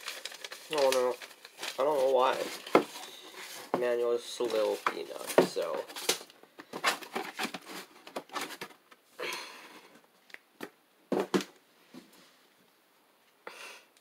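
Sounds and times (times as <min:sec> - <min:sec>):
paper rustling: 0:00.0 - 0:08.8.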